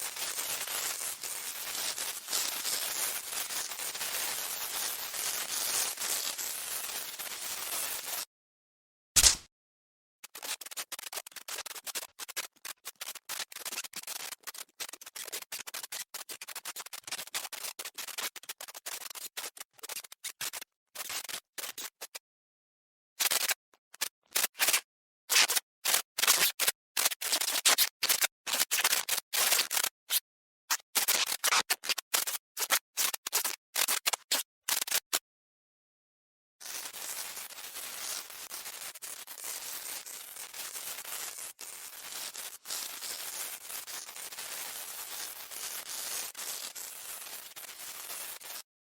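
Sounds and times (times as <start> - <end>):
electric sparking and crackling: 9.2 - 9.5.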